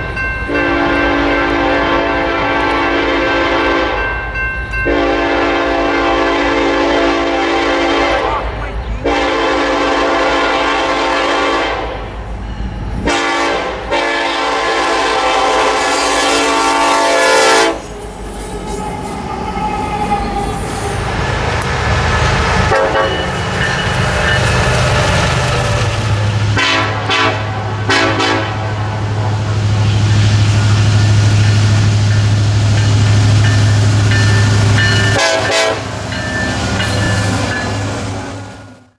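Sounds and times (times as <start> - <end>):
train wheels rolling: 0.0 - 38.9
locomotive air horn blasts: 0.5 - 4.0, 4.9 - 12.0, 13.0 - 17.9, 22.5 - 23.5, 26.5 - 29.5, 34.5 - 36.1.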